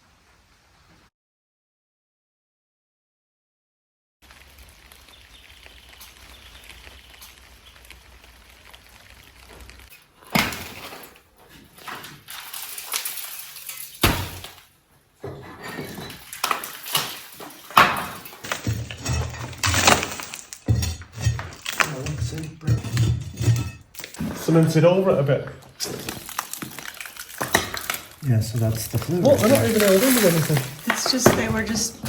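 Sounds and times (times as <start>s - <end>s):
masonry knocking and cracking: 4.9s - 32.0s
brick pieces clattering down: 7.2s - 32.0s.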